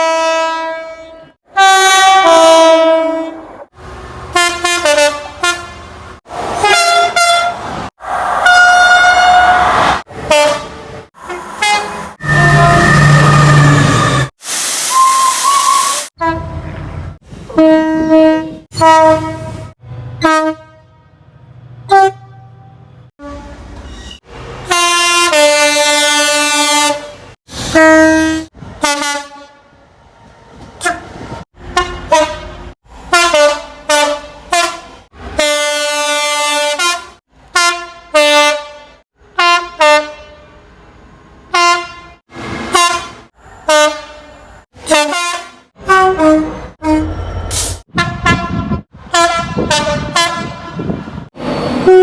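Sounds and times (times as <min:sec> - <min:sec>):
train horn blasts: 0:00.0 - 0:03.5, 0:04.3 - 0:06.0, 0:06.6 - 0:07.6, 0:08.4 - 0:14.3, 0:14.9 - 0:16.8, 0:17.5 - 0:21.2, 0:21.9 - 0:23.7, 0:24.6 - 0:29.8, 0:31.7 - 0:40.7, 0:41.5 - 0:51.2
train passing: 0:03.4 - 0:14.3.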